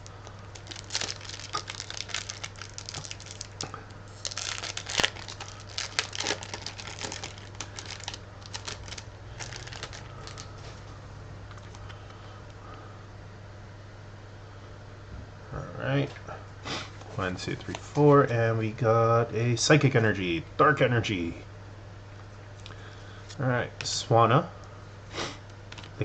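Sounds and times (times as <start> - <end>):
plastic and foil wrapper crinkling: 0.0 - 10.8.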